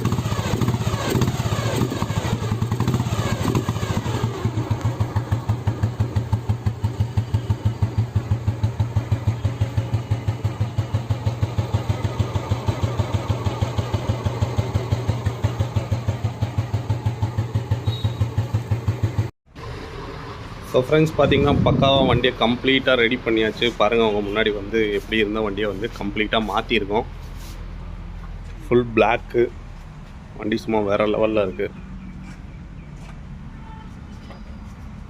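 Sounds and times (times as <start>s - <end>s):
motorcycle engine idling: 0.0s - 21.4s.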